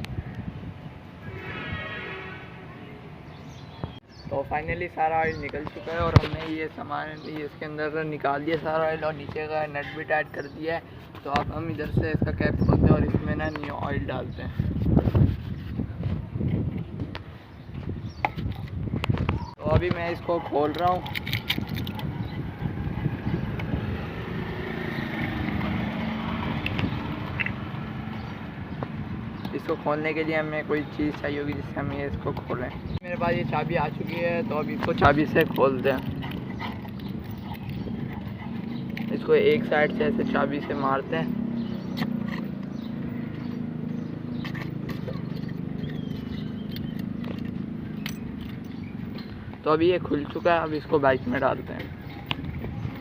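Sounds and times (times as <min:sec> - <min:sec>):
vehicle engine hum: 0:19.4 - 0:53.0.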